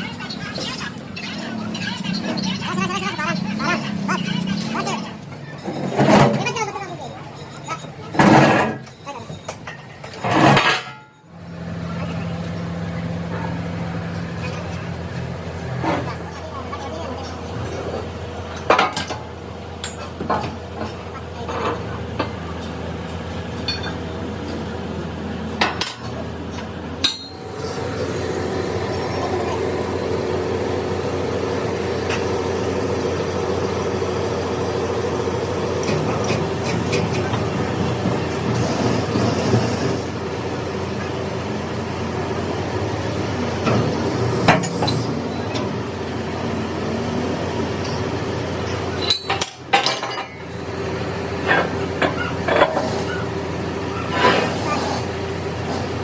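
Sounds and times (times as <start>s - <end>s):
workshop machine running: 0.0s - 56.0s
metal tools clinking: 18.5s - 20.6s, 23.5s - 24.1s, 48.7s - 50.4s.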